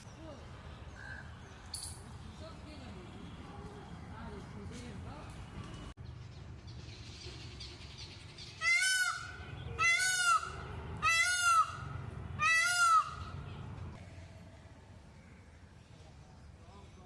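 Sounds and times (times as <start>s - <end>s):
peacock calling: 8.4s - 14.3s.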